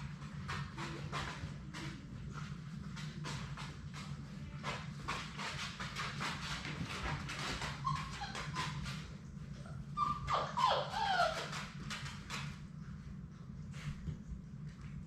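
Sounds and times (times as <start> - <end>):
small paws tapping on floor: 0.0 - 15.0
puppy squealing: 7.6 - 9.0, 9.6 - 11.7
puppies whimpering: 7.6 - 11.7.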